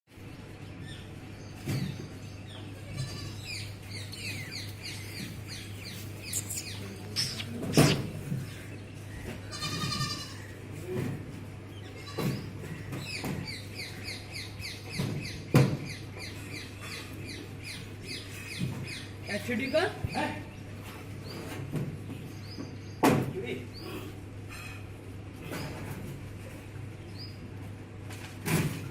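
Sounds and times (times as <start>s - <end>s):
birds chirping: 0.4s - 10.7s
goats bleating: 2.8s - 3.4s, 9.5s - 10.5s.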